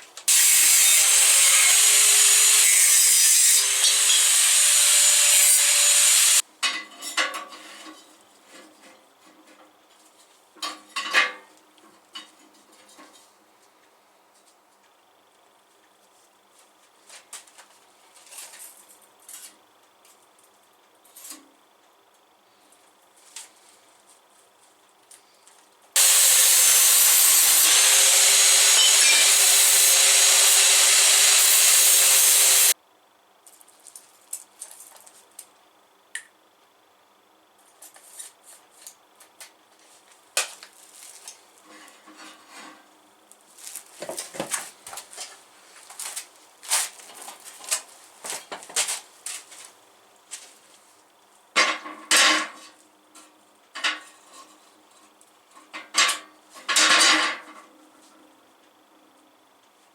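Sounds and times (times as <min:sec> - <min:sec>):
angle grinder cutting steel: 0:00.3 - 0:06.4, 0:26.0 - 0:32.8.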